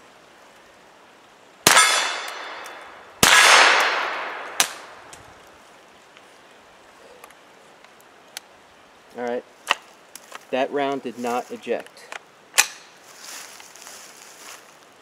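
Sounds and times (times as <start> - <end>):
rifle shots: 1.6 - 5.0
steel target ringing: 1.7 - 4.4.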